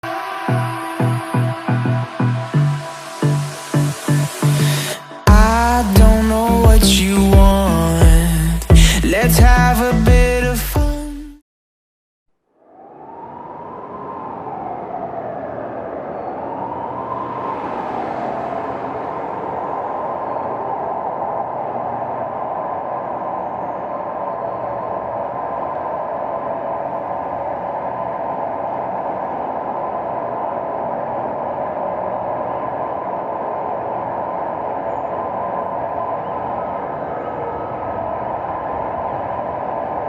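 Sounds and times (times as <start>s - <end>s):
gliding tone: 0.0s - 10.1s, 12.6s - 40.0s
dense hum of vehicle traffic: 12.6s - 40.0s.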